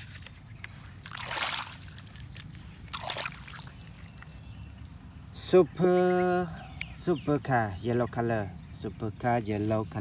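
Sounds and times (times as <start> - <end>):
water splashes: 0.0 - 4.2
water trickling and sloshing: 0.0 - 5.2.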